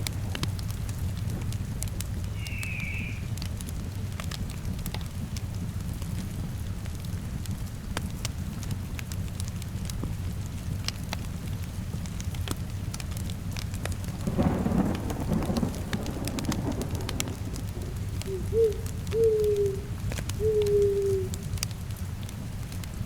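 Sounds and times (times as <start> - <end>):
crackling log fire: 0.0 - 23.0
steady rain: 0.0 - 23.0
low falling whistle-like tones: 2.4 - 3.4, 17.7 - 21.4
thunder rolling: 13.8 - 21.6.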